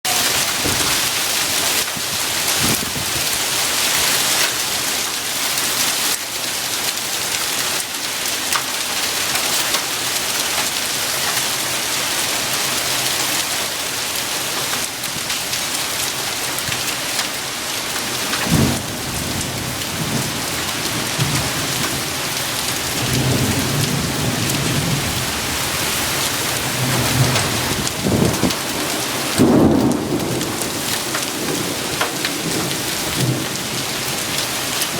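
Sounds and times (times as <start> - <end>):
hail and heavy rain pelting: 0.0 - 34.9
thunder rumbling: 0.1 - 3.4, 18.4 - 34.9.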